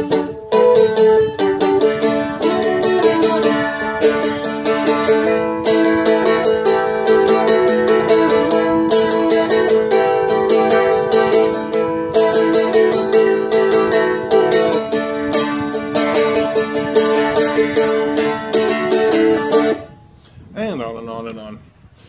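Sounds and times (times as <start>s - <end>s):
dulcimer strummed with a pick: 0.0s - 20.0s.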